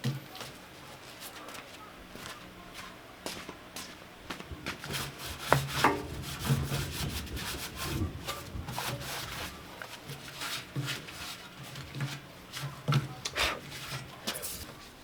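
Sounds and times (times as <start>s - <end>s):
scraping and rubbing: 4.8s - 14.8s.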